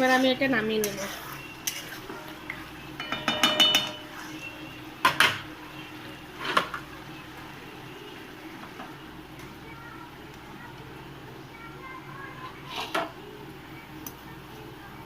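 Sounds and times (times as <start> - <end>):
pan and utensils clinking: 0.0 - 5.5.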